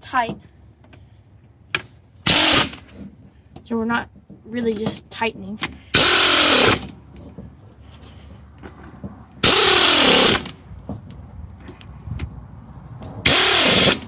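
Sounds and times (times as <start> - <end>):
impact wrench spinning bolt: 6.0 - 7.0, 9.4 - 10.6, 13.2 - 14.0.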